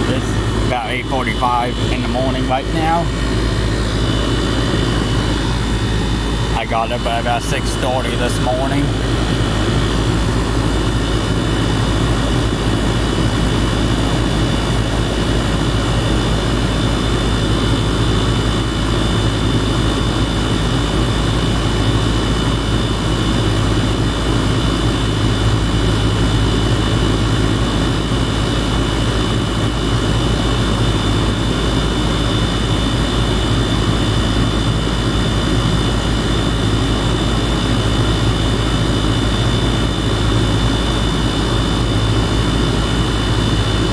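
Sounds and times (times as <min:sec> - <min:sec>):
faint high whine: 0:00.0 - 0:19.3
compressor hum: 0:00.0 - 0:43.9
fan air rushing: 0:00.0 - 0:43.9.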